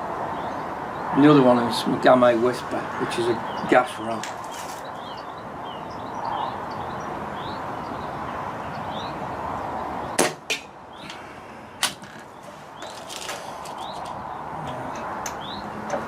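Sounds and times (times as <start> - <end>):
small birds chirping: 0.2 - 10.2, 10.8 - 16.0.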